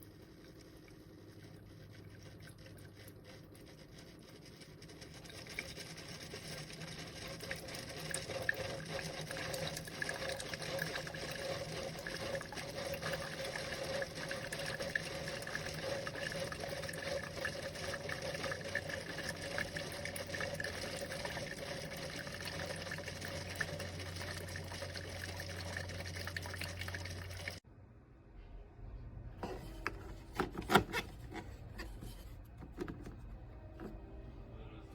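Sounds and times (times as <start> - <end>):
coffee maker pump humming: 0.0 - 27.6, 29.4 - 34.4
deeper machine hum: 31.2 - 34.9.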